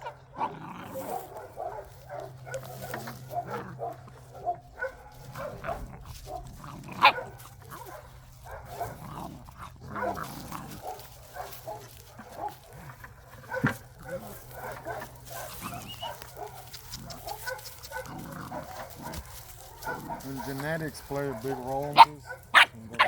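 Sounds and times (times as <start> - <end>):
puppies yipping and whimpering: 13.2 - 20.6.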